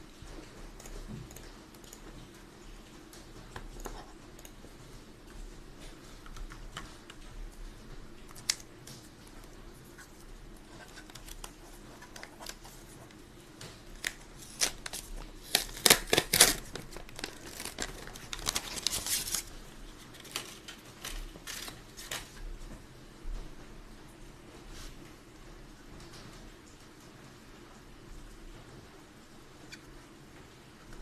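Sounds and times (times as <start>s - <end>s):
rustling crinkling: 3.1s - 22.8s.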